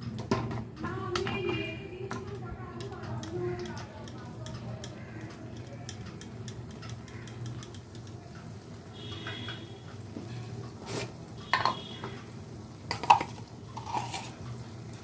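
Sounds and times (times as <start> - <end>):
gravy simmering sizzle: 2.1 - 15.0
utensil scraping a pan: 10.3 - 11.8, 13.0 - 14.5.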